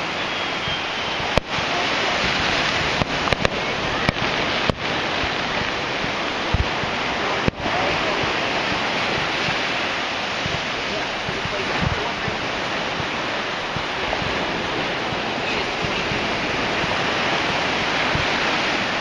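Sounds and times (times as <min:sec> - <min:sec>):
steady rushing noise: 0:00.0 - 0:19.0
fireworks bangs and cracks: 0:01.2 - 0:09.7.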